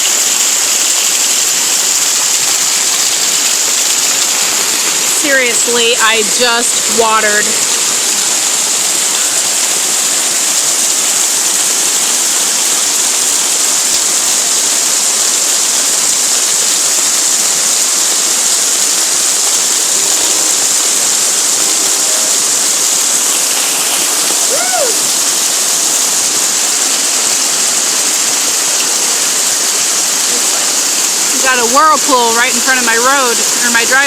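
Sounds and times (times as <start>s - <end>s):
heavy rain pouring: 0.0s - 34.0s.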